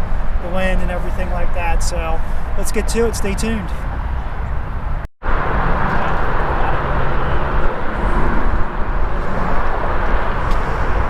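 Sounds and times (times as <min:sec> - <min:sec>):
wind buffeting microphone: 0:03.3 - 0:11.0.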